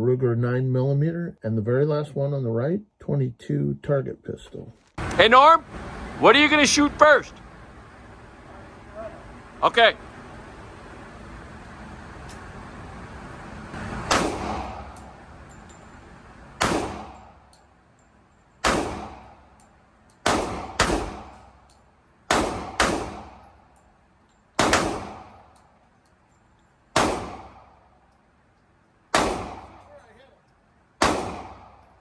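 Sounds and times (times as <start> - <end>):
handgun shots: 14.1 - 15.2, 16.6 - 17.3, 18.6 - 19.4, 20.2 - 21.5, 22.3 - 23.5, 24.6 - 25.6, 27.0 - 27.8, 29.1 - 29.9, 31.0 - 31.9.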